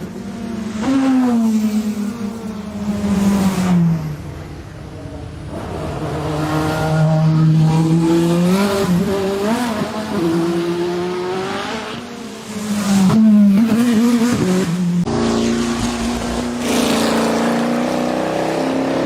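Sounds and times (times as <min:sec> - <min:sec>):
car engine revving: 0:13.1 - 0:19.0.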